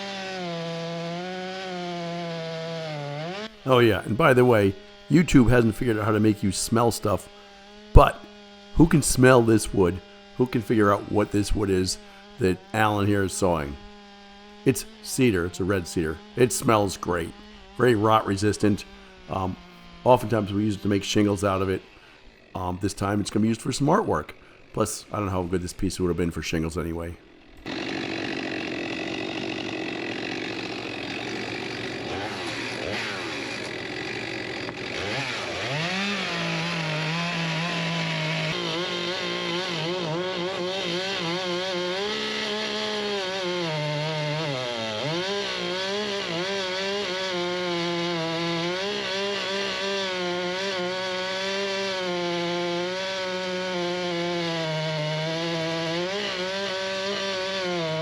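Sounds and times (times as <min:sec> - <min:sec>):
chainsaw cutting log: 0:00.0 - 0:58.0.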